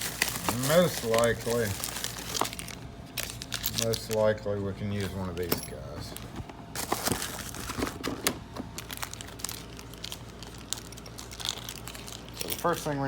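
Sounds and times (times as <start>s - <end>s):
crinkling and rustling: 0.0s - 13.0s
small metal parts clinking: 8.9s - 13.0s.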